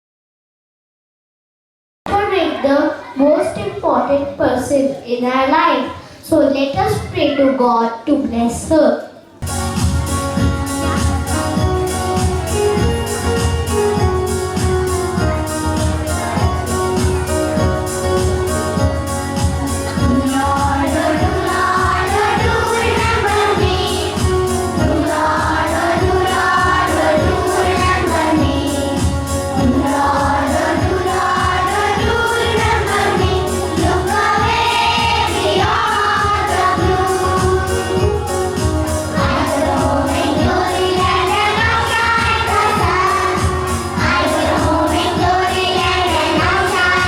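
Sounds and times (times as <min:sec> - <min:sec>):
group of voices singing: 0:09.4 - 0:47.0
instrumental backing with beat: 0:09.4 - 0:47.0.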